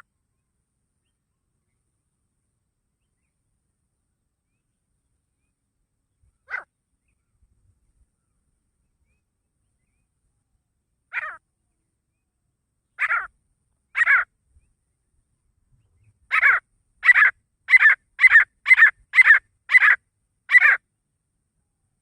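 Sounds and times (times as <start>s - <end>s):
francolin harsh call: 13.0s - 13.3s, 13.9s - 14.3s, 16.3s - 20.8s.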